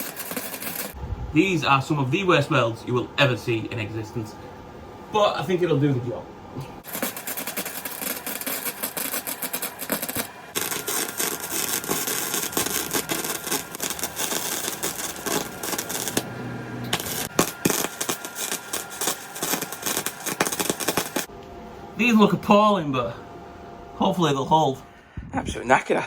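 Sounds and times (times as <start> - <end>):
welding arc crackling: 0.0 - 1.0, 6.8 - 21.3.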